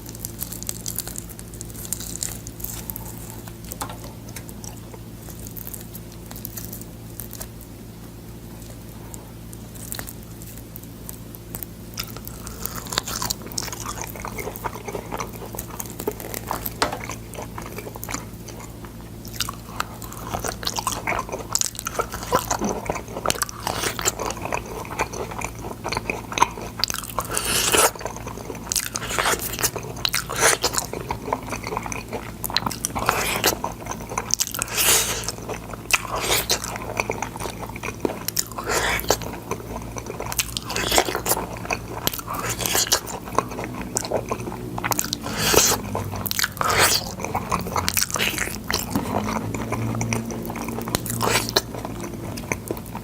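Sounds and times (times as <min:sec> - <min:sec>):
low hum: 0:00.0 - 0:25.9
crunchy chewing of bean pods: 0:00.0 - 0:53.0.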